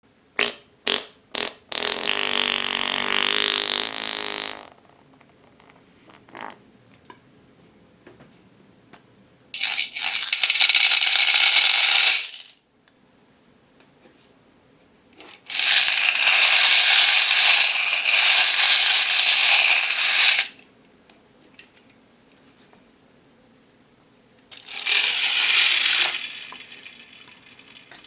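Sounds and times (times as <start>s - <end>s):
plastic beads pouring into container: 9.6s - 12.5s, 15.5s - 20.6s, 24.5s - 28.0s.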